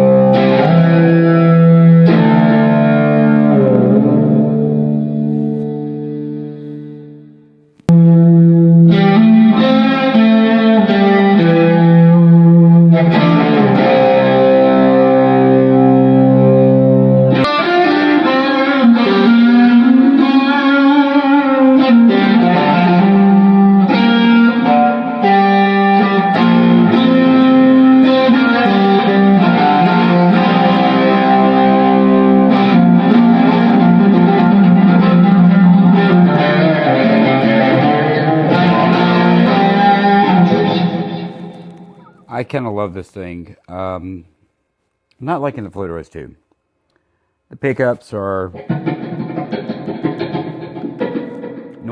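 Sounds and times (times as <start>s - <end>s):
wavering swooping guitar pitch: 0.0s - 7.2s, 7.9s - 42.3s, 48.6s - 51.9s
electric guitar chords and riffs: 0.0s - 42.3s, 48.5s - 51.9s.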